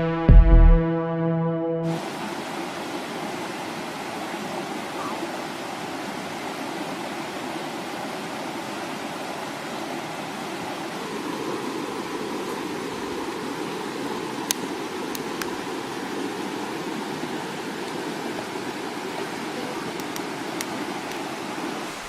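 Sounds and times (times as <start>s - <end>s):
intro music: 0.0s - 2.0s
river water rushing: 1.9s - 22.0s.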